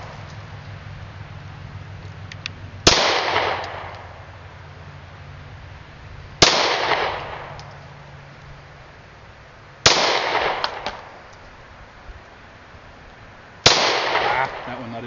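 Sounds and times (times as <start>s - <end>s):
pistol shots with echo: 2.8s - 4.0s, 6.4s - 7.6s, 9.8s - 11.2s, 13.6s - 14.8s.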